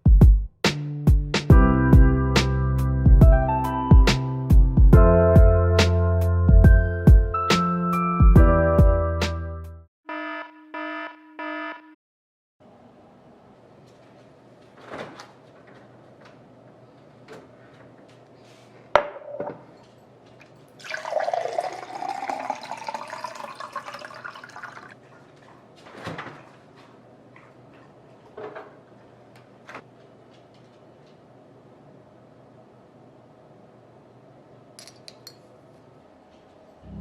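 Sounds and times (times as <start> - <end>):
water pouring: 20.7 - 25.6.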